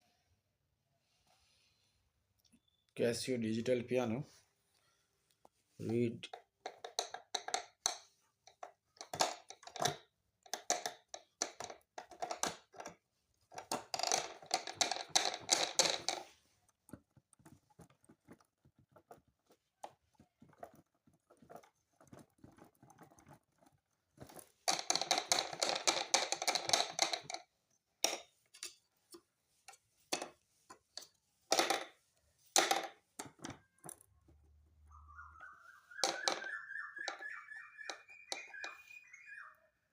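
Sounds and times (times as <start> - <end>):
rapid plastic clattering: 5.9 - 28.2.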